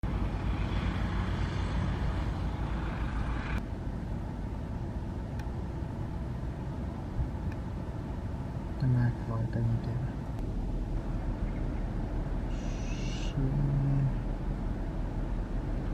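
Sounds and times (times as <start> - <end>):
high hiss: 12.5 - 13.4.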